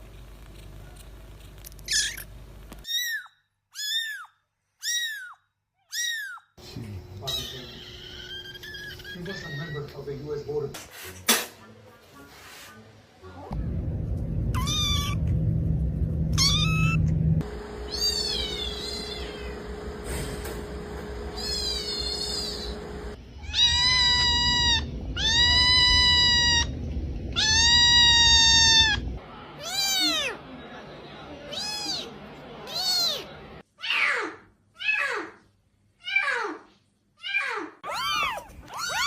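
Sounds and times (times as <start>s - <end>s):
low rumbling noise: 13.5s - 18.0s, 22.7s - 29.2s
cat meowing: 14.6s - 15.2s, 16.4s - 17.0s, 17.9s - 19.6s, 21.4s - 22.7s, 23.4s - 26.7s, 27.3s - 30.4s, 31.5s - 34.1s, 37.2s - 39.0s.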